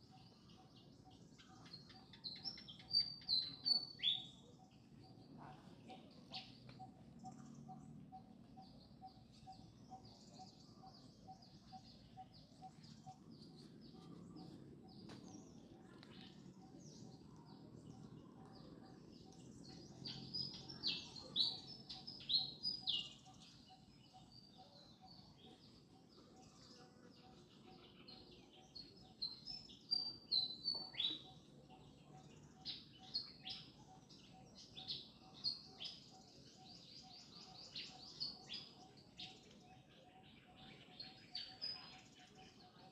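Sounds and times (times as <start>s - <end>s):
small birds chirping: 0.0s - 42.9s.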